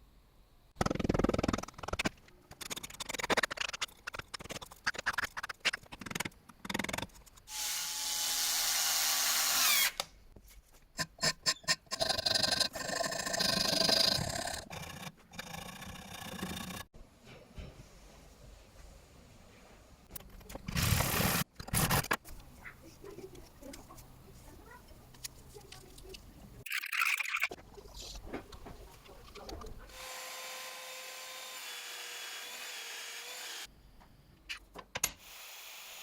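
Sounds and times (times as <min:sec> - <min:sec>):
power tool running: 0:29.9 - 0:33.7.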